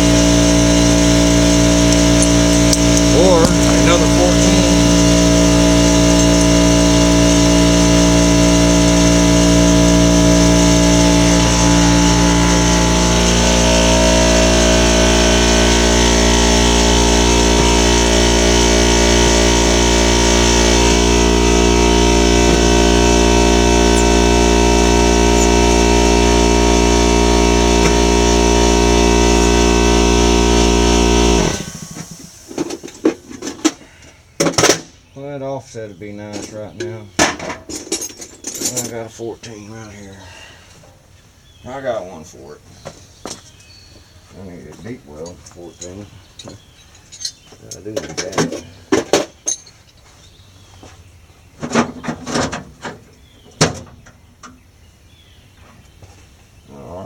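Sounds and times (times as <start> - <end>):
motor running steadily: 0.0 - 33.1.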